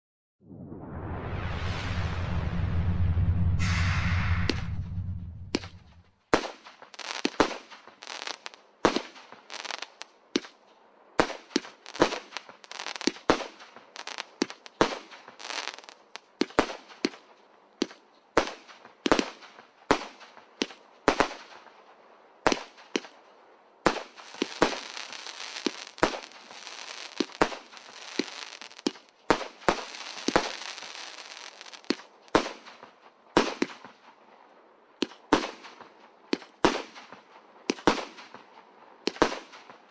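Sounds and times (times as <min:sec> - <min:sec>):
fireworks crackling: 0:01.1 - 0:10.5, 0:11.2 - 0:17.2, 0:23.9 - 0:33.0
fireworks banging: 0:03.0 - 0:10.0, 0:23.9 - 0:32.6.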